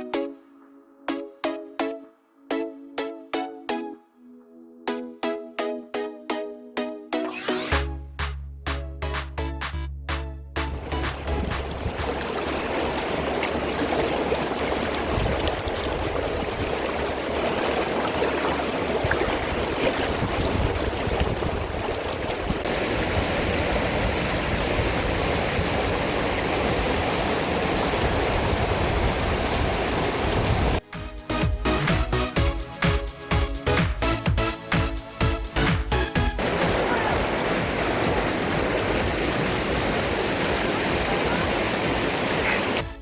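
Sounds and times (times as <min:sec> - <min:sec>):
electronic dance music: 0:00.0 - 0:12.2, 0:30.8 - 0:39.6, 0:41.2 - 0:43.0
stream water rushing: 0:10.7 - 0:30.8, 0:35.6 - 0:43.0.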